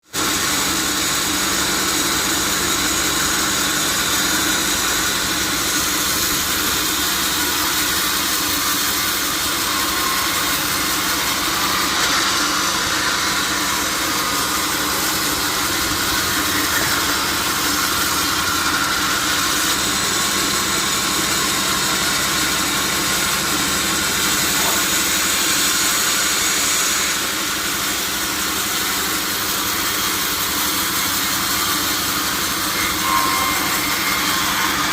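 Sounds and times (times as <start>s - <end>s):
sawmill machinery drone: 0.0s - 34.9s.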